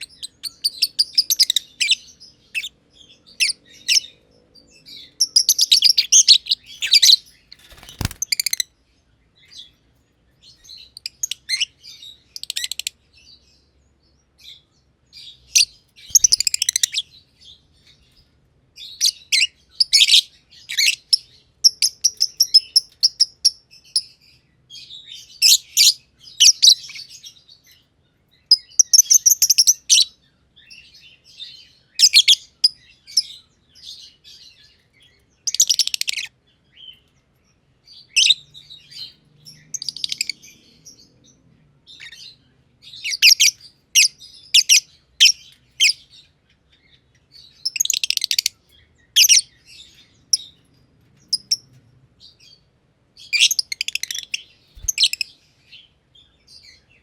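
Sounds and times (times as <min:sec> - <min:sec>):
lovebirds chirping shrilly: 0:05.0 - 0:08.7, 0:16.0 - 0:17.1, 0:53.2 - 0:55.4.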